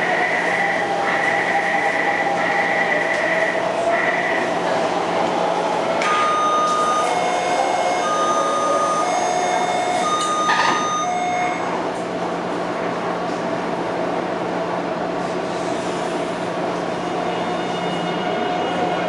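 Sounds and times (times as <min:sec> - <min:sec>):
train car hum: 0:00.0 - 0:19.0
two-tone door warning chime: 0:06.0 - 0:11.7.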